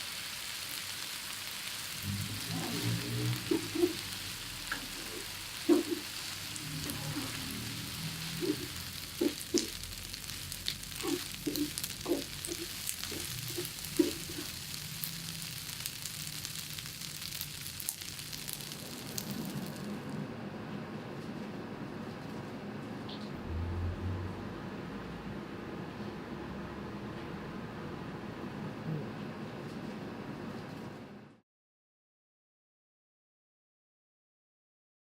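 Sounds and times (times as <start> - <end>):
food sizzling on a hot plate: 0.0 - 20.2
low hum: 2.0 - 15.2.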